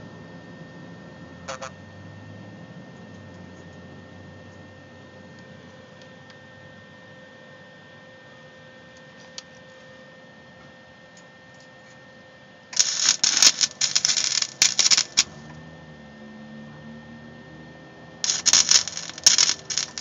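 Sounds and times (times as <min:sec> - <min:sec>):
welding arc crackling: 0:12.8 - 0:15.4, 0:18.2 - 0:20.0.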